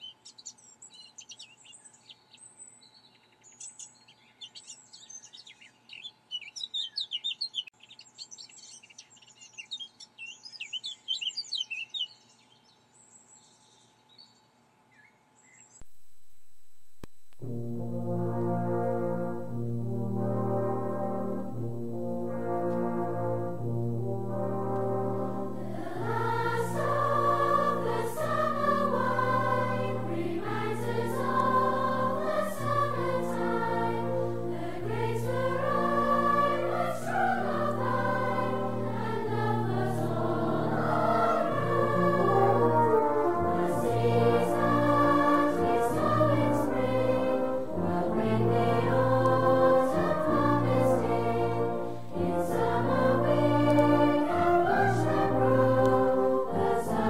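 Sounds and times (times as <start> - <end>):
choral music with brass and orchestra: 17.4 - 57.0.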